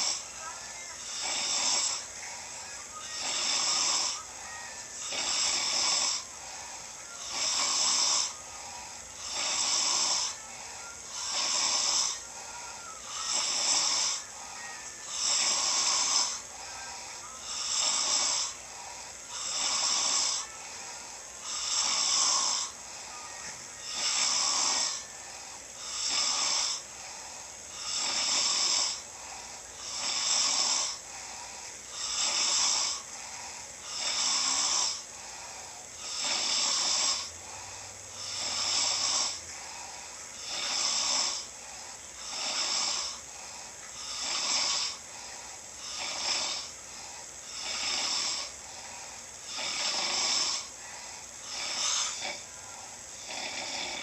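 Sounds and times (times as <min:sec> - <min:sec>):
person snoring: 0:00.0 - 0:54.0.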